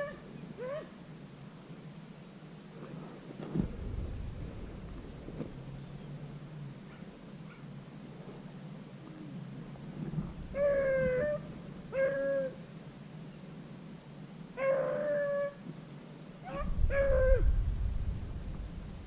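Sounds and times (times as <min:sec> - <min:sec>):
low rumble: 0:03.6 - 0:06.8, 0:16.6 - 0:19.0.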